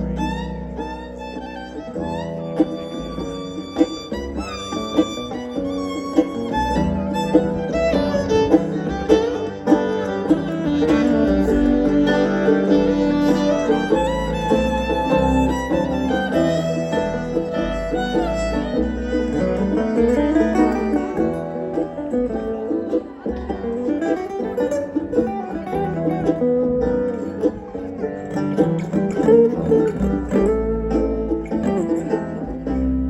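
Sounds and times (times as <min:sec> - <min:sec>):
bass notes: 0:00.0 - 0:33.0
fiddle lead: 0:00.0 - 0:33.0
picked acoustic guitar: 0:00.0 - 0:33.0.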